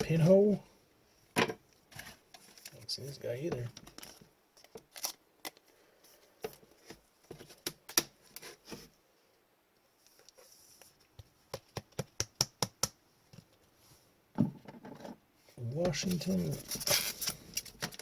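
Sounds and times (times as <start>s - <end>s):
trading cards flipped and tapped: 11.2s - 13.0s.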